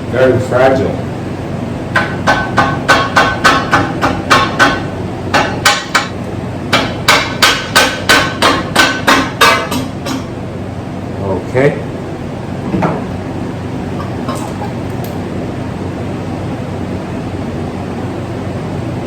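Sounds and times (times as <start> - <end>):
mallet tapping on metal engine: 1.9 - 10.3.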